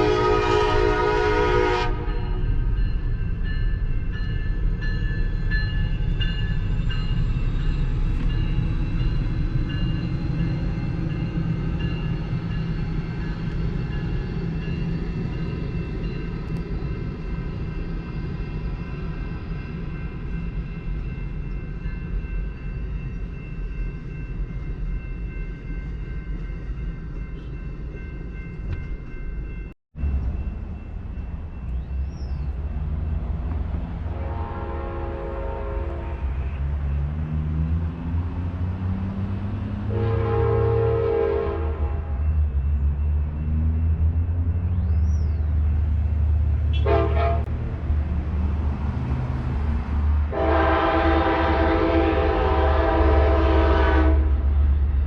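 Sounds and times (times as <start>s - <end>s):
train horn chord: 0.0s - 2.8s, 34.0s - 36.7s, 39.8s - 42.4s, 46.7s - 47.6s, 50.3s - 54.5s
train rolling rumble: 0.0s - 55.0s.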